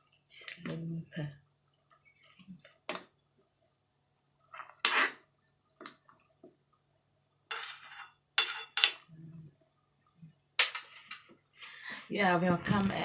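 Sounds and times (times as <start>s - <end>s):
utensil scraping: 4.6s - 5.3s, 7.5s - 8.9s
utensils clinking on cookware: 7.5s - 9.0s, 10.6s - 11.3s.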